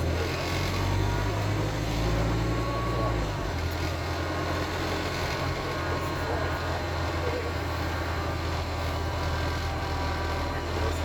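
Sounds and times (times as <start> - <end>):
bus diesel engine droning: 0.0 - 11.0.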